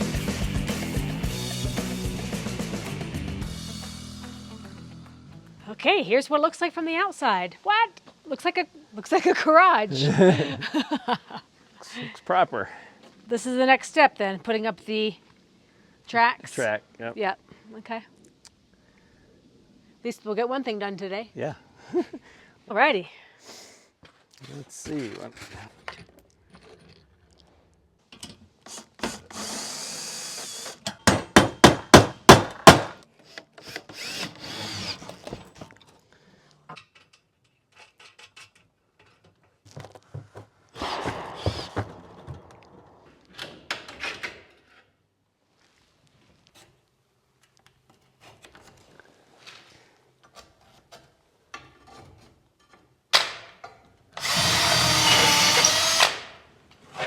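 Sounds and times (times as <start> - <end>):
power drill running: 28.7 - 30.8, 33.7 - 35.2, 54.2 - 56.4
loud sharp knocks: 31.0 - 33.0, 40.8 - 42.8.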